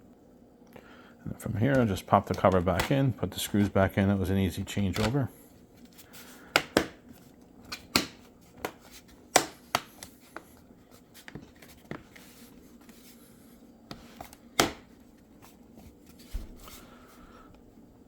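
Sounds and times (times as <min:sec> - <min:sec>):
plastic cover snapping into place: 0:07.7 - 0:09.9.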